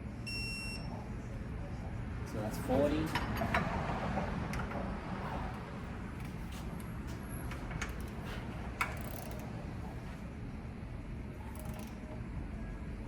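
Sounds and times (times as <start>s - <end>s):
wrench clicking on bolts: 8.8s - 9.5s, 11.5s - 12.0s.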